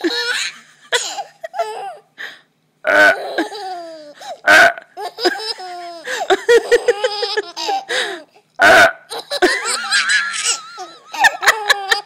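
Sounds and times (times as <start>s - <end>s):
baby laughing: 0.0s - 2.0s, 3.0s - 8.4s, 9.0s - 12.0s
adult fake burp: 2.8s - 3.2s, 8.6s - 9.1s.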